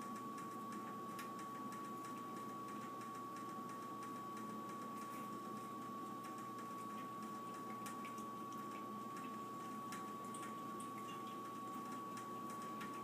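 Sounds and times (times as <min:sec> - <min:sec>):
cat lapping water: 0:05.0 - 0:13.0
water running from faucet: 0:05.4 - 0:13.0.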